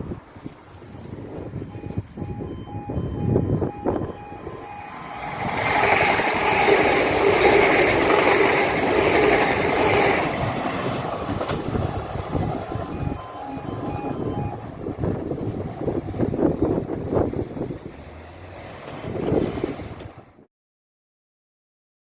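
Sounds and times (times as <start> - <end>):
wind buffeting microphone: 0.0 - 18.2, 18.8 - 20.3
train passing: 0.0 - 20.3
pulsed beeping tone: 1.7 - 7.2, 12.4 - 15.0.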